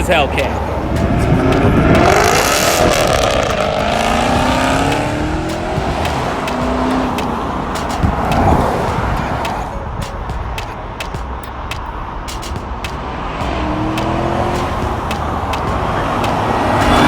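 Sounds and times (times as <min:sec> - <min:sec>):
car engine accelerating past: 0:00.8 - 0:07.8, 0:13.0 - 0:17.0.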